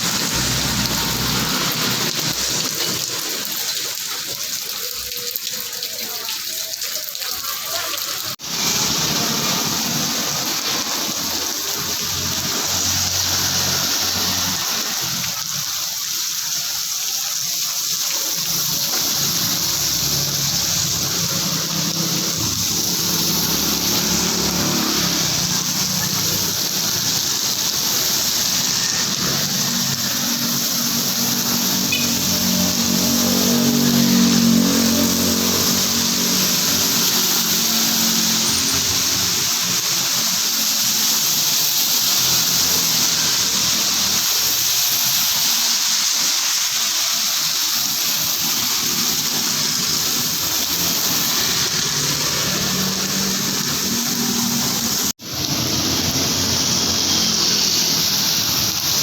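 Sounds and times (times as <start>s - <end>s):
heavy rain pouring: 0.0s - 59.0s
vehicle engine hum: 19.1s - 39.9s.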